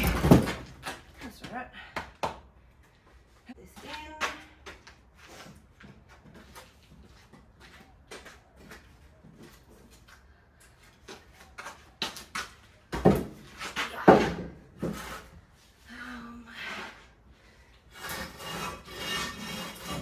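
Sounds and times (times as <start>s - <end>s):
loud wooden thuds: 0.0s - 0.8s
timber knocking and scraping: 0.0s - 1.1s, 12.9s - 15.3s.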